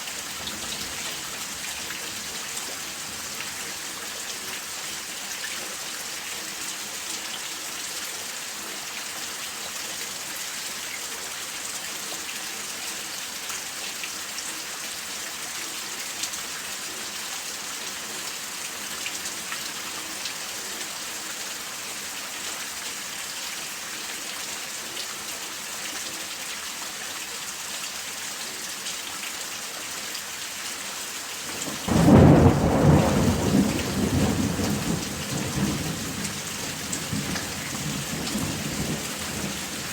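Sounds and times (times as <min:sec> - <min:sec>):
steady rain falling: 0:00.0 - 0:39.9
thunder crack and rumble: 0:31.6 - 0:39.9.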